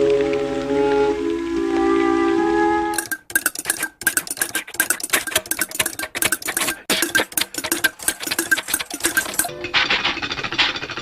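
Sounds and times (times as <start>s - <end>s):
fast clicking and clattering: 3.0s - 11.0s.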